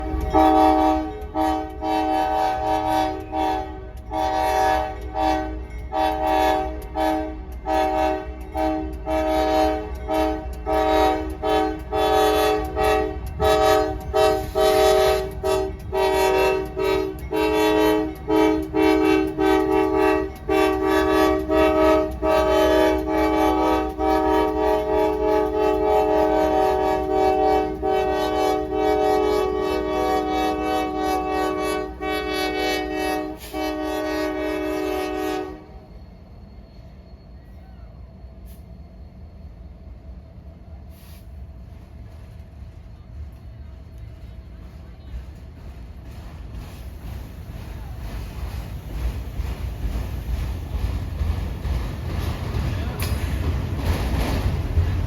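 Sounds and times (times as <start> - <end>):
multi-chime train horn blasts: 0.0 - 35.9.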